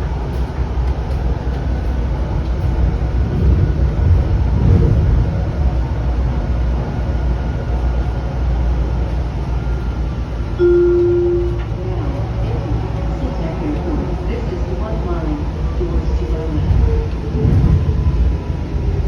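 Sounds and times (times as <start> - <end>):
train rumbling on track: 0.0 - 19.0
steady tone: 10.6 - 11.8.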